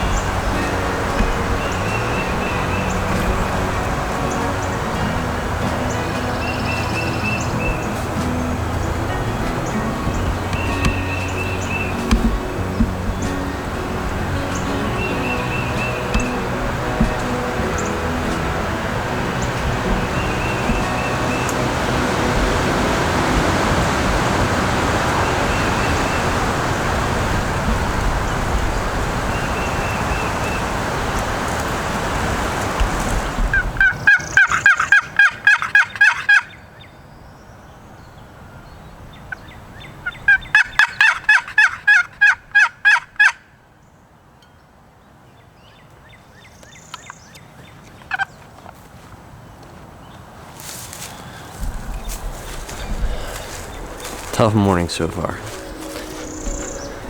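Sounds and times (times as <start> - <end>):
vehicle and road noise: 0.0 - 45.2, 45.9 - 57.0
turkey yelping: 33.5 - 36.6, 40.0 - 43.4, 48.1 - 48.3.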